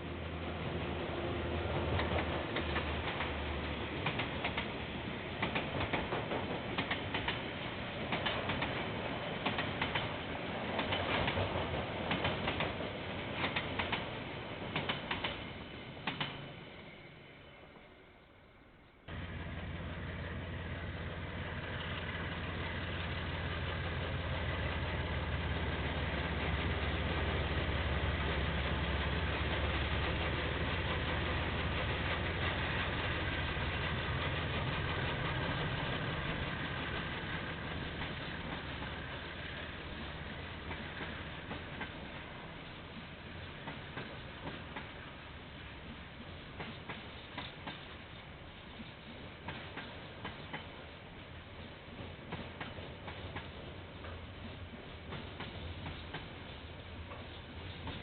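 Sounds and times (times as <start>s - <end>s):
diesel locomotive engine drone: 0.0s - 58.0s
train wheels clicking over rail joint: 4.0s - 4.8s, 5.4s - 16.6s, 29.4s - 45.2s, 45.8s - 50.9s, 51.6s - 58.0s.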